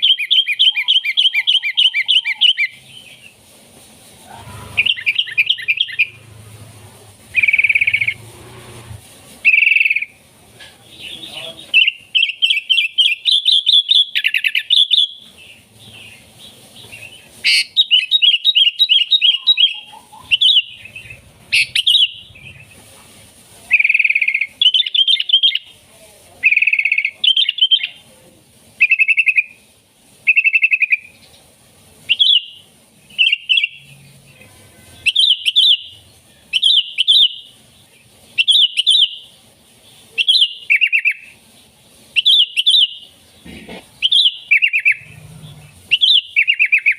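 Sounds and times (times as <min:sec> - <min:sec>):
bird singing bubbly phrases: 0:04.8 - 0:06.2, 0:07.3 - 0:08.2, 0:17.5 - 0:22.7, 0:44.0 - 0:46.9.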